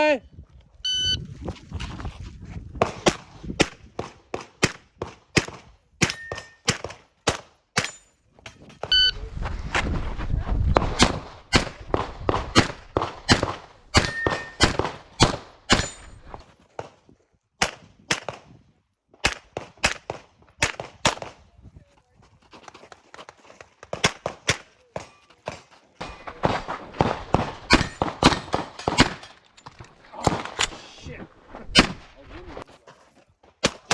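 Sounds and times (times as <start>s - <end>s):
pistol shots: 2.9s - 8.0s, 11.0s - 16.2s, 19.2s - 21.4s, 26.0s - 29.3s
steel targets ringing: 6.0s - 6.7s, 14.0s - 14.7s, 15.7s - 16.2s.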